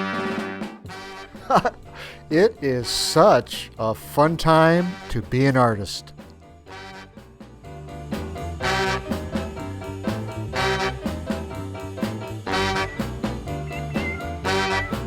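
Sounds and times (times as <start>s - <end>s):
upbeat swing music with brass: 0.0s - 15.0s.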